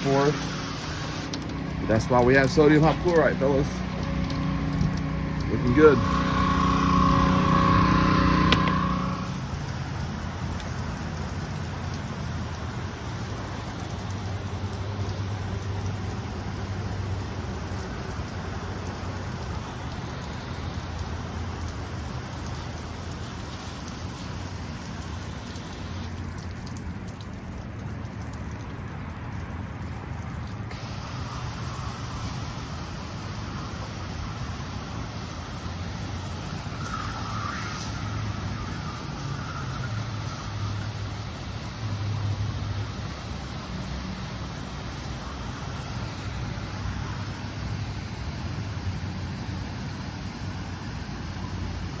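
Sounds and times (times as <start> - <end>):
steady hum: 0.0 - 9.6
small gas engine running: 0.0 - 26.1, 30.7 - 52.0
water spraying hiss: 0.0 - 27.3, 30.7 - 52.0.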